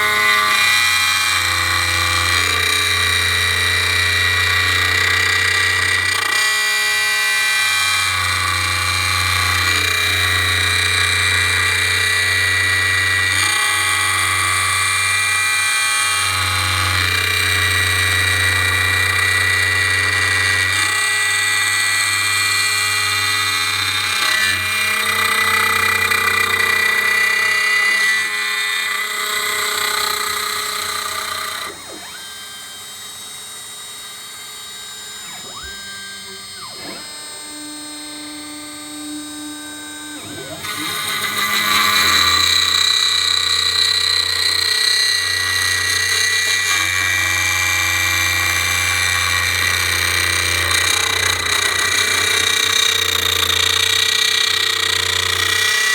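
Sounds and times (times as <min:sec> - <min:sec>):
router spindle cutting wood: 0:00.0 - 0:55.9
machine running with gliding tones: 0:29.2 - 0:47.1.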